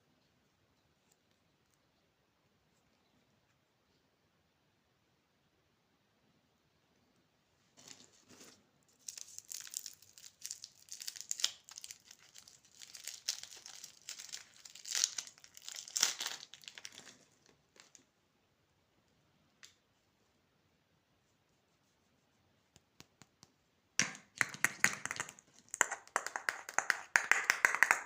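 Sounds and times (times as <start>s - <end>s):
plastic wrapper crinkling: 8.9s - 18.1s.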